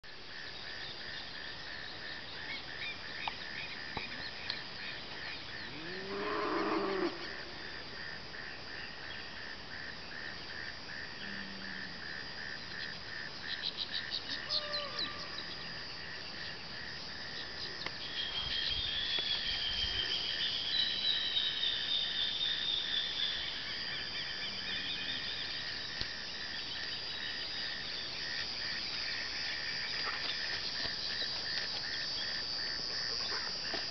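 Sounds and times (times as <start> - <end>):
cow mooing: 5.7 - 7.2
rapid pulsing chirp: 17.3 - 24.6
birds calling with high chips: 17.3 - 28.2.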